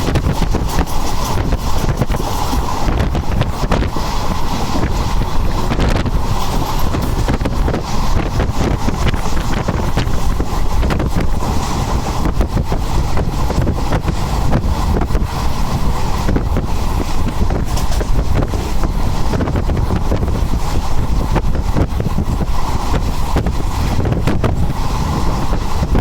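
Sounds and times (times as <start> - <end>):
train rumbling: 0.0 - 26.0
wind buffeting microphone: 0.0 - 26.0
rattles and knocks: 5.8 - 7.8, 17.3 - 18.8.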